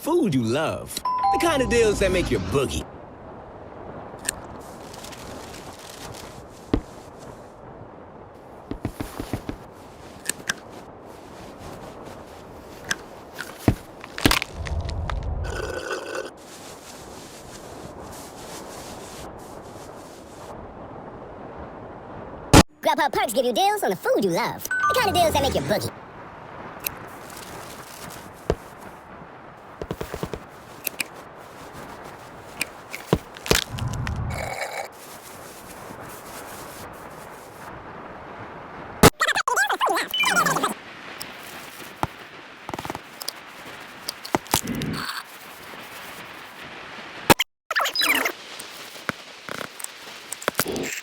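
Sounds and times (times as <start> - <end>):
footsteps: 4.7 - 7.4, 8.7 - 11.8, 27.2 - 29.0, 29.8 - 37.6
taps: 8.7 - 9.6
low rumble: 14.5 - 15.6, 33.7 - 34.6
heavy low thud: 33.7 - 34.4.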